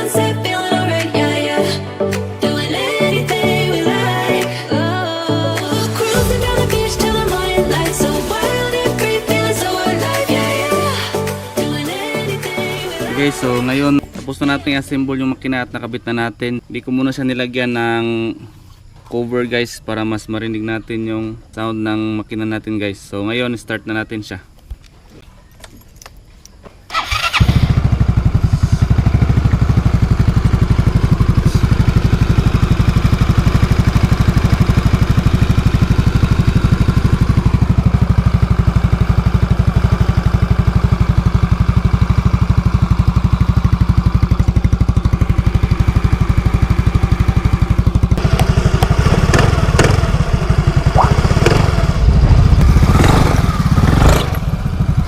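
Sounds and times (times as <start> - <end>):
scooter engine starting and running: 26.9 - 55.0.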